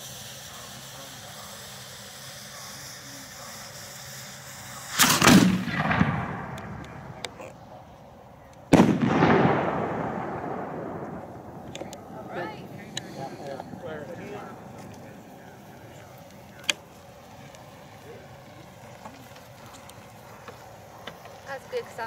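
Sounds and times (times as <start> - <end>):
fuse hissing: 0.0 - 22.0
firework bursting bang: 4.8 - 7.2, 8.7 - 14.2
firework shell launch thump: 4.9 - 7.2, 8.7 - 12.0.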